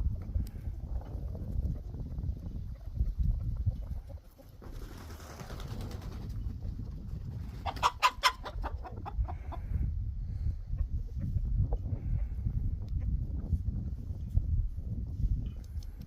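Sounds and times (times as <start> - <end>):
chickens clucking: 1.0 - 4.7, 5.6 - 13.2.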